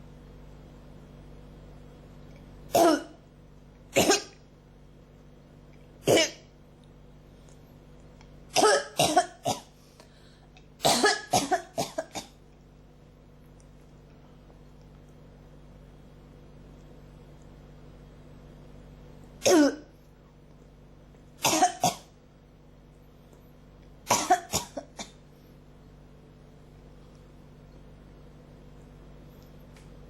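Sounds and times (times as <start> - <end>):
person coughing: 2.7 - 3.2, 4.0 - 4.4, 6.0 - 6.4, 8.5 - 9.8, 10.8 - 12.4, 19.4 - 19.9, 21.4 - 22.1, 24.1 - 25.2.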